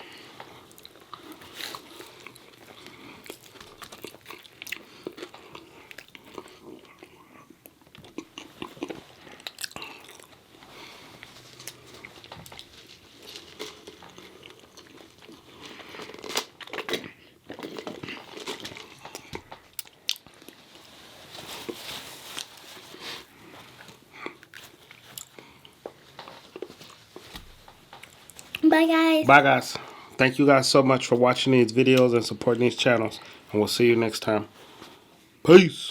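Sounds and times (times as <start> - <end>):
biting and chewing crunchy food: 0.8 - 10.4, 11.3 - 20.5.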